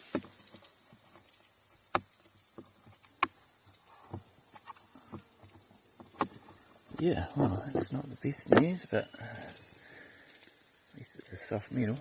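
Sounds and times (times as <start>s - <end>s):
high-pitched insect chorus: 0.0s - 12.0s
sharp clicks and knocks: 1.9s - 7.1s.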